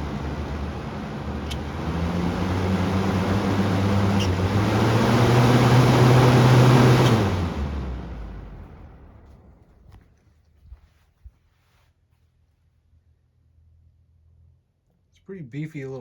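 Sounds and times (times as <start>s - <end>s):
box fan motor hum: 0.0s - 10.0s.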